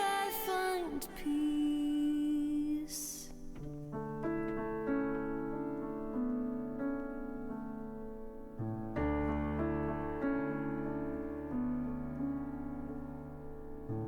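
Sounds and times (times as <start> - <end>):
person singing: 0.0 - 3.4
slow piano chords: 0.0 - 14.0.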